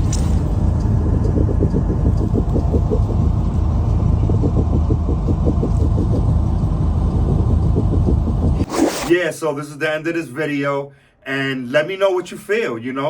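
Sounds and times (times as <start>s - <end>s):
low rumble with uneven pulsing: 0.0s - 8.7s.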